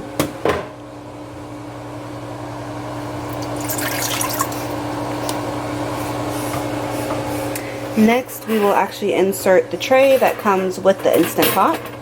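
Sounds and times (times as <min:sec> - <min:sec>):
water pouring into container: 0:03.4 - 0:04.7.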